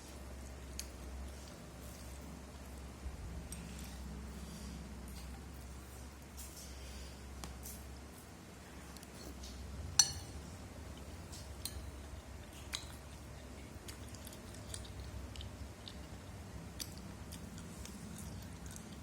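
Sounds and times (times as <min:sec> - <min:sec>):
chewing food with mouth clicks: 0:00.1 - 0:04.4, 0:10.9 - 0:19.0.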